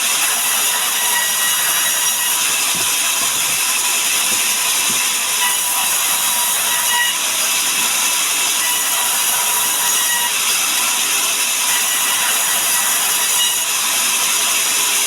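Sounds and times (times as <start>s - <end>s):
sawmill saw cutting log: 0.0s - 15.0s.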